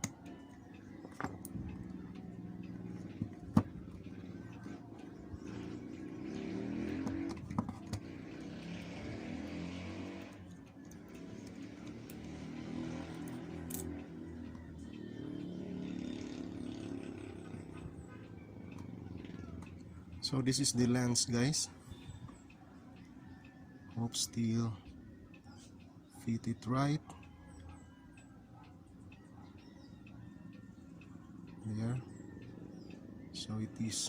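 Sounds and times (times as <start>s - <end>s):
vehicle engine: 0.0s - 34.0s
clicks from handling small parts: 13.1s - 14.6s.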